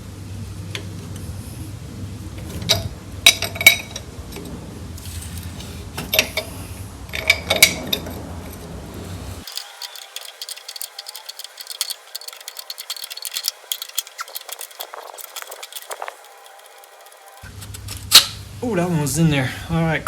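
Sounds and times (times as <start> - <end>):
steady low hum: 0.0 - 20.0
metal tools and parts clinking: 2.5 - 4.1, 5.1 - 8.7, 9.4 - 18.4.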